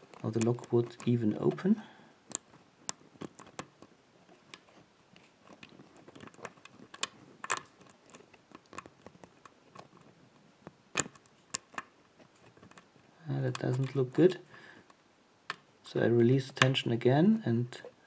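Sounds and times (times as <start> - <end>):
lock pick clicks: 2.3 - 3.9, 5.5 - 10.0, 10.6 - 11.9.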